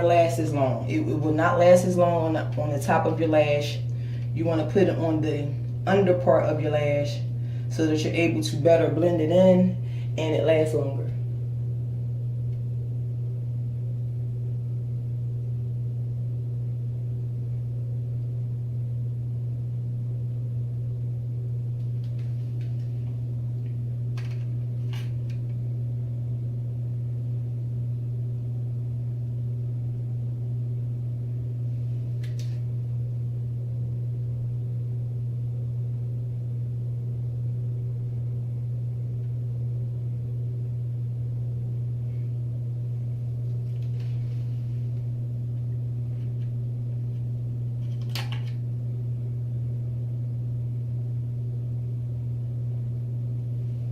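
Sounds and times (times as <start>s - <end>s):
steady low hum: 0.0s - 53.9s.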